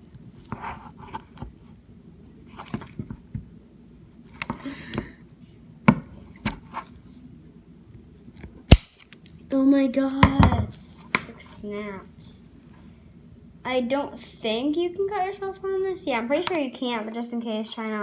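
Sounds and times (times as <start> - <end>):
scissors snipping hard plastic: 8.7 - 9.1.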